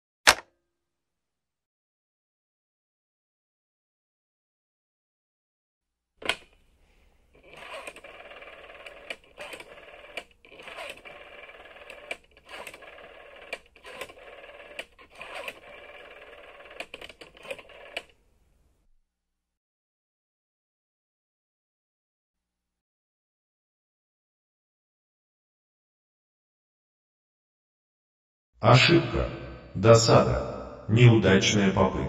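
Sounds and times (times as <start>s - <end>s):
telephone click: 0.3s - 0.5s
dialing clicks: 6.2s - 6.7s, 7.3s - 18.2s.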